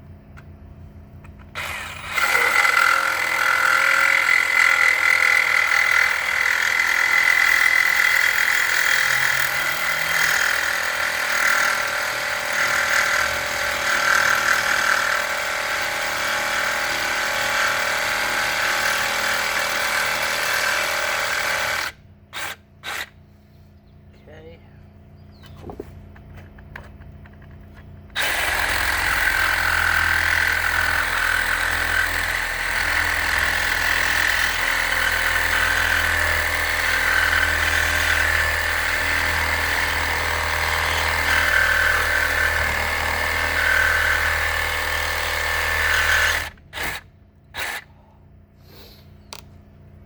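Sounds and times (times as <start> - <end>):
power tool cutting steel: 1.6 - 23.1.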